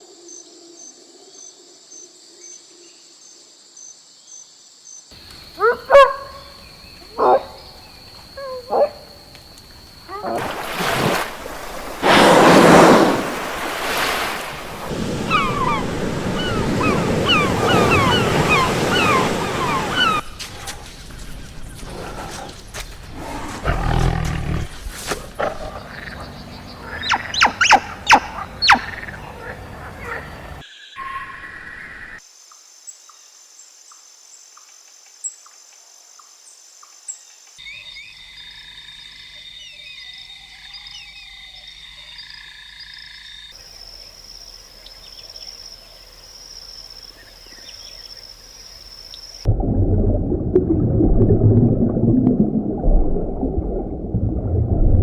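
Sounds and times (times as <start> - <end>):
cricket chirping: 0.0 - 49.5
short high falling animal calls: 15.0 - 20.3
low rough roar-like animal call: 23.2 - 24.8.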